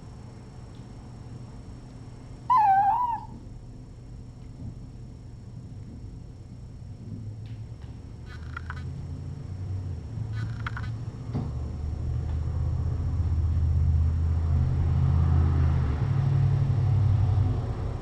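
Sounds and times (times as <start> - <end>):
brief high squeaks: 2.5 - 3.3.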